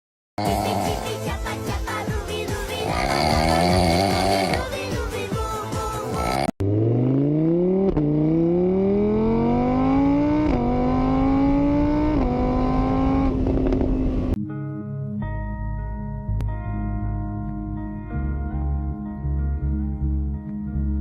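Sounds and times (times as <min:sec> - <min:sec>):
car engine accelerating: 0:06.5 - 0:14.4.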